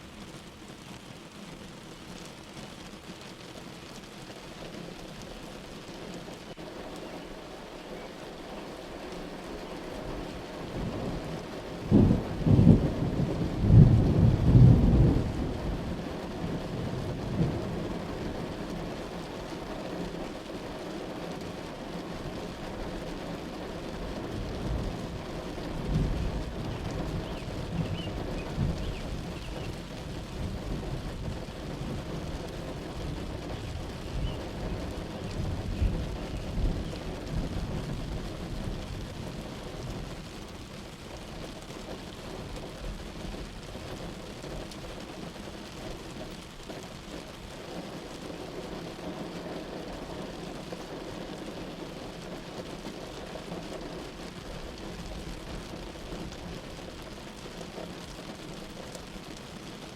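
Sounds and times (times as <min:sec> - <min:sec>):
steady rain: 0:00.0 - 0:59.9
thunder rumbling: 0:10.7 - 0:18.5, 0:24.0 - 0:40.2.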